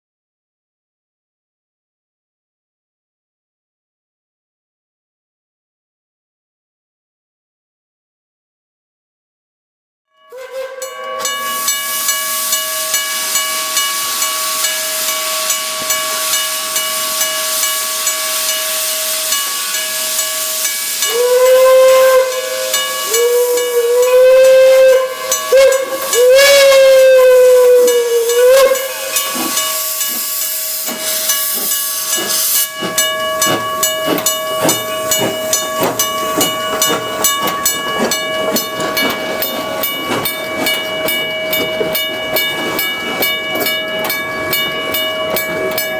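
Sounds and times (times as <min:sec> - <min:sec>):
steam whistle blasts: 0:10.3 - 0:11.7, 0:20.4 - 0:31.3
steam hissing: 0:10.6 - 0:45.9.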